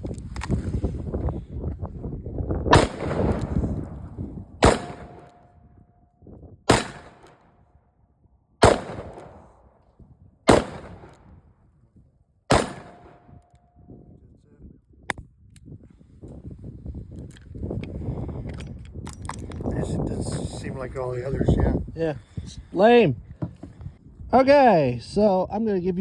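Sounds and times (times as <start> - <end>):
gunshots: 2.7 - 4.0, 4.6 - 5.4, 6.7 - 7.4, 8.6 - 9.6, 10.5 - 11.2, 12.5 - 13.3.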